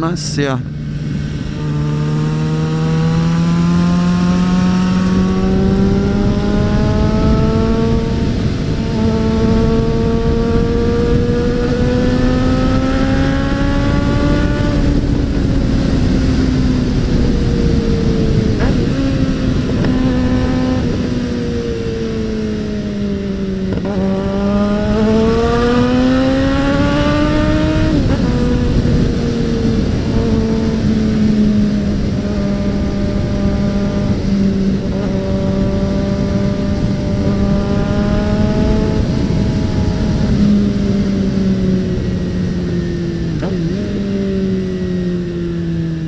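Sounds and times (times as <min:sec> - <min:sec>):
wind rushing over microphone: 0:00.0 - 0:46.0
motorcycle engine revving: 0:00.6 - 0:46.0.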